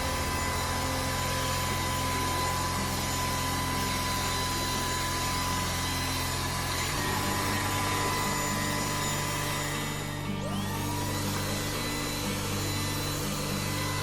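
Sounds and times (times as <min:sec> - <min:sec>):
stick vacuum cleaner running: 0:00.0 - 0:14.0.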